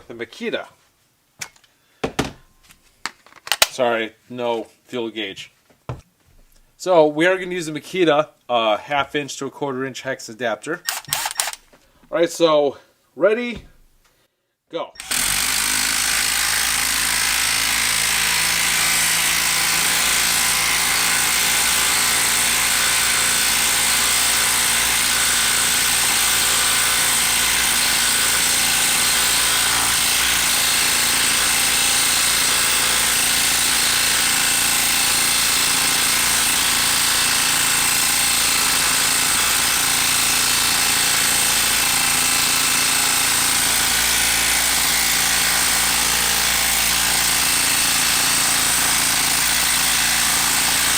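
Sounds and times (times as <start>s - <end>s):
impact driver hammering: 10.9s - 11.7s, 15.0s - 50.9s.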